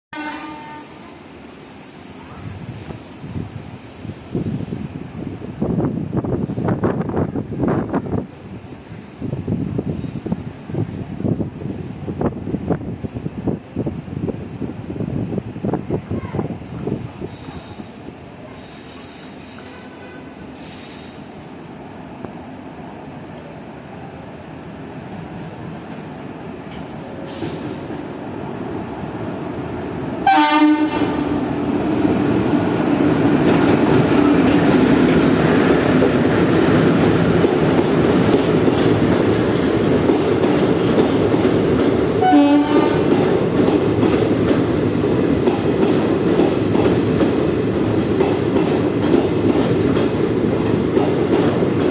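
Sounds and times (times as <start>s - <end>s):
locomotive horn: 0.2s - 1.1s, 19.6s - 20.4s, 30.2s - 31.2s, 42.2s - 43.1s
train approaching: 0.2s - 51.9s.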